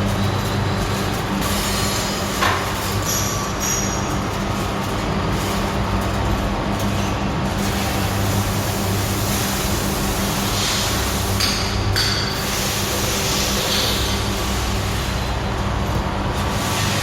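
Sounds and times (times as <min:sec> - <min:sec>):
welding machine hum: 0:00.0 - 0:17.0
welding hiss bursts: 0:07.7 - 0:11.8, 0:12.4 - 0:15.2.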